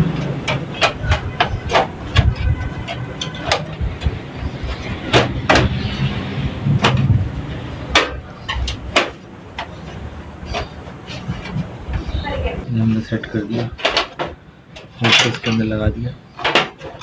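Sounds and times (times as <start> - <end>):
clicks and knocks in metal case: 0.0 - 12.3, 16.3 - 17.0.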